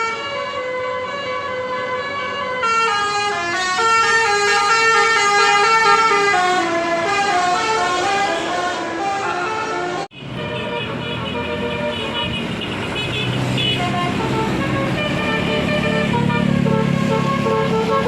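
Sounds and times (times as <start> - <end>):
musical bus air horn melody: 0.0 - 18.0.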